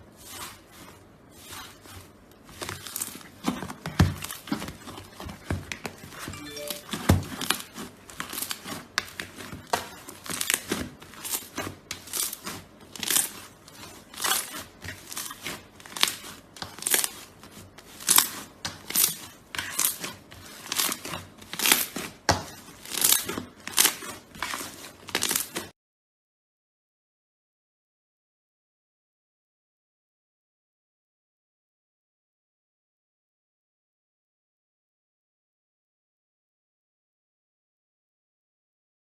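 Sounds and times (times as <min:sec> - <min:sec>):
slime squishing and crinkling: 0:00.0 - 0:06.2, 0:07.4 - 0:25.7.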